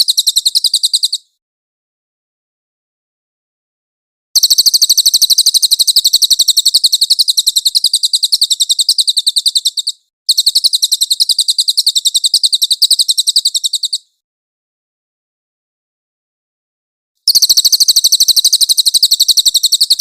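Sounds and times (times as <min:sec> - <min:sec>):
bird trilling high chirps: 0:00.0 - 0:01.4, 0:04.4 - 0:14.2, 0:17.3 - 0:20.0.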